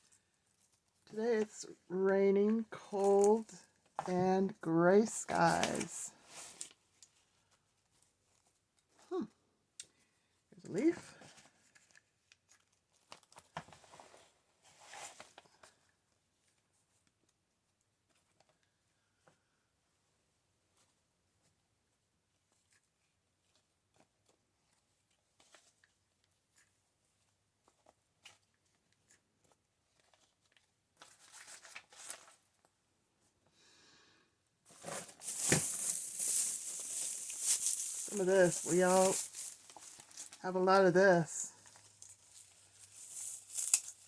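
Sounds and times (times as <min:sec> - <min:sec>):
paper rustling and crinkling: 0:05.2 - 0:08.5, 0:11.2 - 0:15.8, 0:27.6 - 0:32.7, 0:34.7 - 0:40.4, 0:41.4 - 0:44.0.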